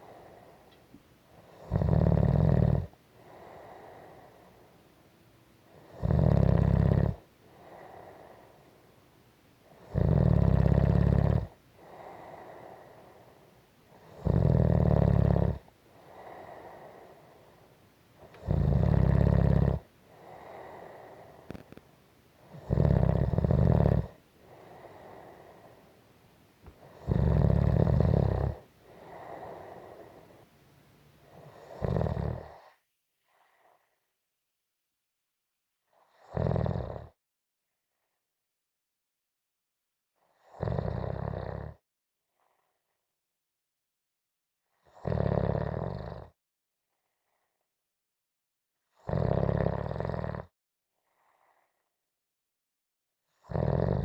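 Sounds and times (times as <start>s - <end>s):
soft breath: 0.0s - 1.7s, 2.9s - 6.0s, 7.2s - 9.9s, 11.6s - 14.2s, 15.5s - 19.0s, 19.6s - 34.2s
loud snoring: 1.4s - 4.3s, 5.7s - 8.3s, 9.8s - 12.9s, 13.9s - 17.2s, 18.2s - 21.8s, 22.4s - 25.8s, 26.7s - 30.4s, 31.3s - 32.7s, 36.1s - 37.2s, 40.4s - 41.8s, 44.9s - 46.4s, 49.0s - 50.5s, 53.4s - 54.0s.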